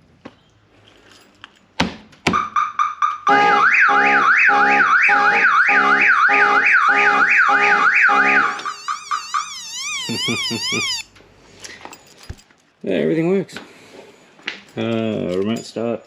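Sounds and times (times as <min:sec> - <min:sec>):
car alarm siren wailing: 0:02.5 - 0:11.1.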